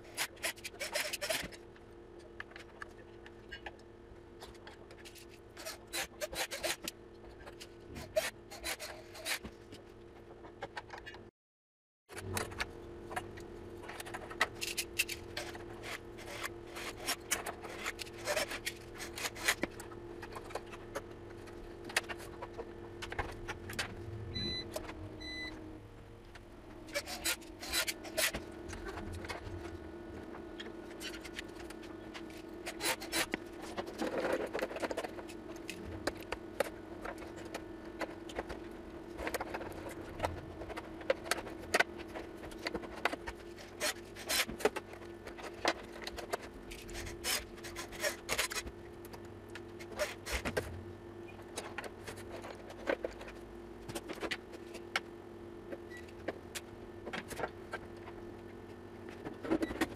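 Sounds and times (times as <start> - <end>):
steady hum: 12.1 - 59.9
short high beeps: 24.3 - 24.6.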